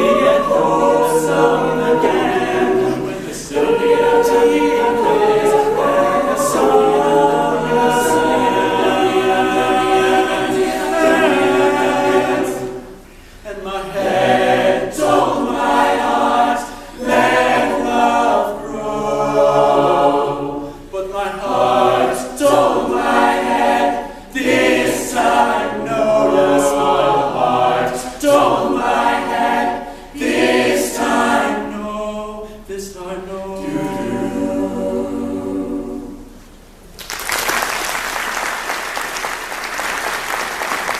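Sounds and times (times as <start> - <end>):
vocal group singing harmony: 0.0 - 36.7.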